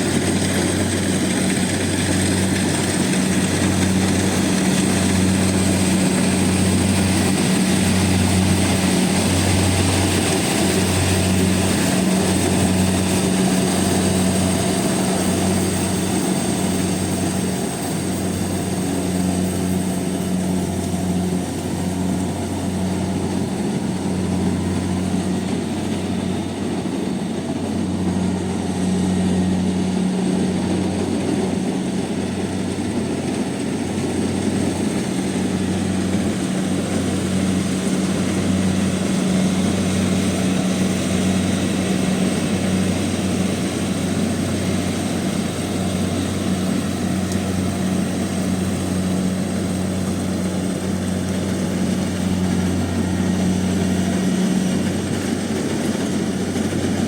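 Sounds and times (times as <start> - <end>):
combine harvester running: 0.0 - 57.0.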